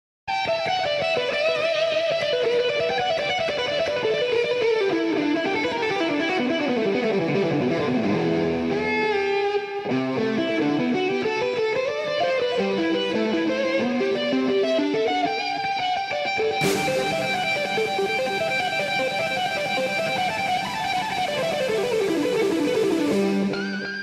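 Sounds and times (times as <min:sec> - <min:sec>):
guitar music with fast runs: 0:00.3 - 0:24.0.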